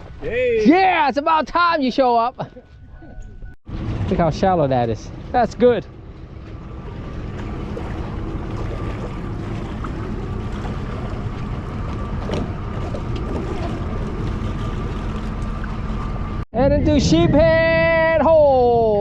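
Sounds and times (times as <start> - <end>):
water and wind noise: 0.0 - 19.0
boat motor running: 2.7 - 16.4.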